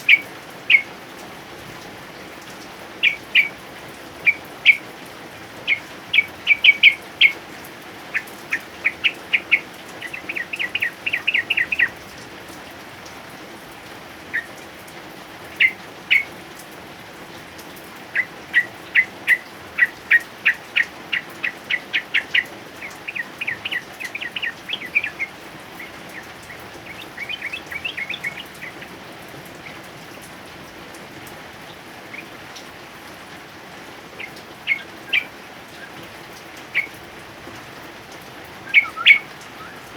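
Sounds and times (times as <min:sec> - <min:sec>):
bird singing sharp repeated notes: 0:00.0 - 0:01.0, 0:03.0 - 0:04.9, 0:05.6 - 0:07.4, 0:08.1 - 0:12.0, 0:18.1 - 0:29.8, 0:34.2 - 0:36.0, 0:36.7 - 0:37.0, 0:38.5 - 0:39.9
steady rain hiss: 0:00.0 - 0:39.9.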